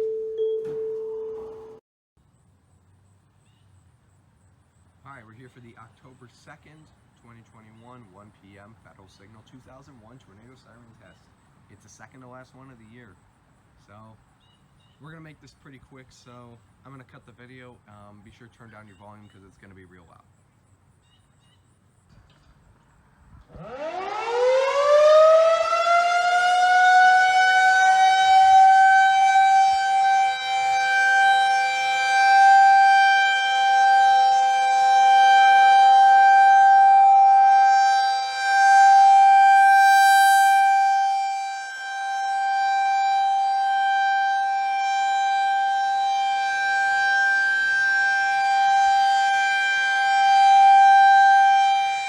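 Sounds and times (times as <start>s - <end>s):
outdoor warning siren wailing: 0.0s - 1.8s, 23.4s - 52.0s.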